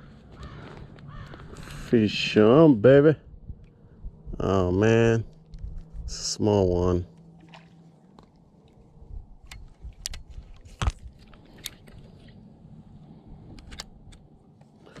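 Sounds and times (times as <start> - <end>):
low rumble: 3.1 - 14.2
fishing gear clicks and knocks: 9.4 - 12.4.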